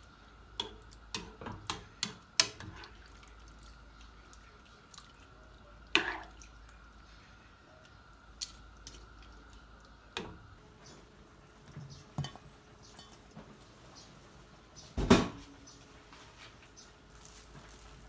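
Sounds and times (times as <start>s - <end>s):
faint steady hum: 0.0s - 18.0s
kitchen utensils clinking: 12.2s - 13.8s.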